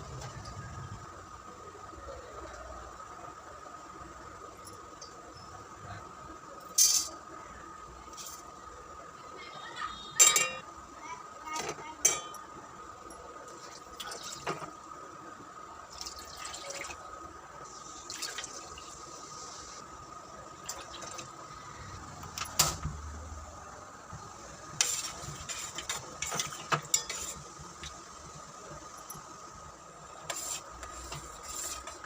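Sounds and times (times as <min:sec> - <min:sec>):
faint steady whine: 0:00.0 - 0:32.0
utensils clinking against a pot: 0:06.7 - 0:07.2, 0:10.2 - 0:10.7, 0:11.6 - 0:12.5, 0:24.8 - 0:27.4
water poured into a pot: 0:15.9 - 0:17.0, 0:18.0 - 0:19.0.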